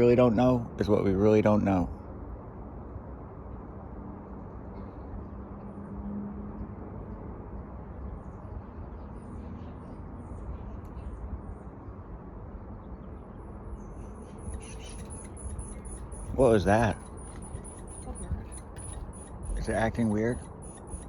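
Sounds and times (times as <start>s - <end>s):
low outdoor rumble: 0.0s - 21.0s
bird chirping rapidly: 13.8s - 21.0s.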